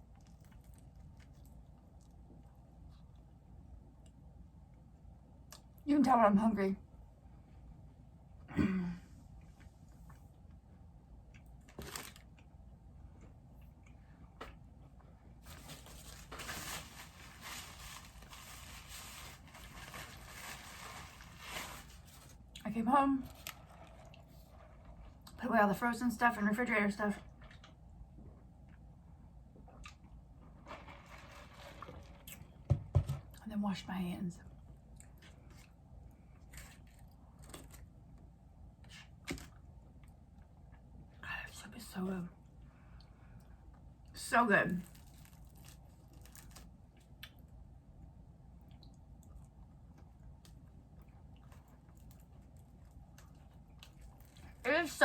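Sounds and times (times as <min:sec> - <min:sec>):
crackly chewing: 0:00.0 - 0:04.8, 0:17.6 - 0:25.4, 0:27.2 - 0:32.6, 0:34.5 - 0:40.9, 0:44.8 - 0:54.7.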